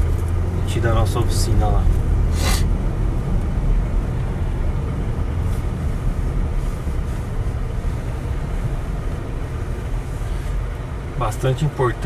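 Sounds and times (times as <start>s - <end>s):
car cabin road rumble: 0.0s - 12.0s.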